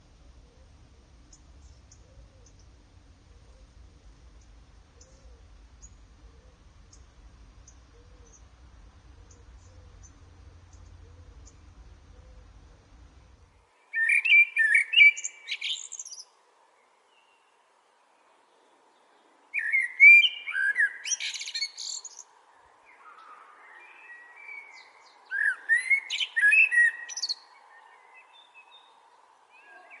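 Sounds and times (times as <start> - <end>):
songbird warbling: 0.3 - 13.4.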